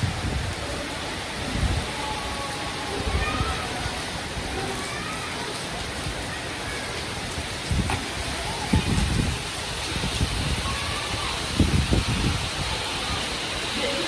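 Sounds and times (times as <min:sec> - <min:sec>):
steady rain falling: 0:00.0 - 0:14.0.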